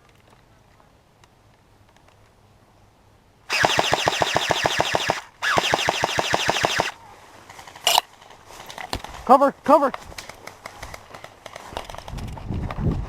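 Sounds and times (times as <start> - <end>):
airsoft gun automatic fire: 3.5 - 7.0.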